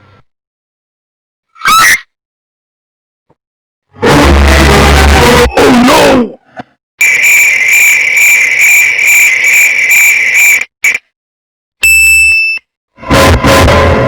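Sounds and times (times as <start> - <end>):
clear electronic tone: 7.0 - 10.7
frog trilling: 7.0 - 11.0.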